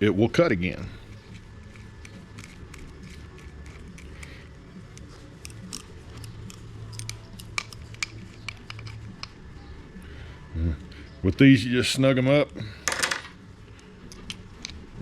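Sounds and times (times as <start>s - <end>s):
small metal parts clinking: 1.1s - 9.4s, 12.8s - 14.8s.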